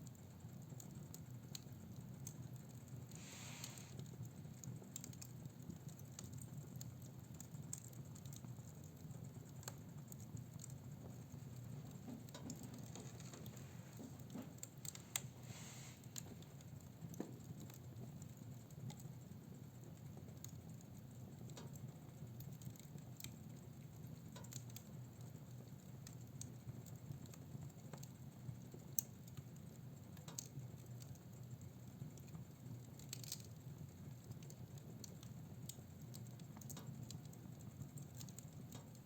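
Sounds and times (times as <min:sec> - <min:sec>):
fire crackling and popping: 0:00.0 - 0:39.0
brief hisses: 0:03.2 - 0:03.9.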